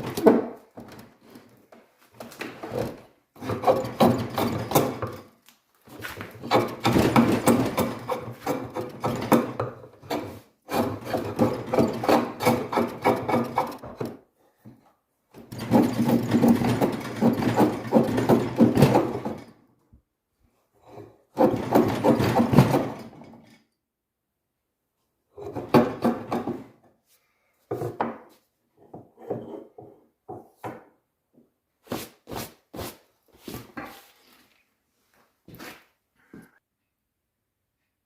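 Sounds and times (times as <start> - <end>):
tool scraping across wood: 0.1 - 14.2, 31.8 - 34.5.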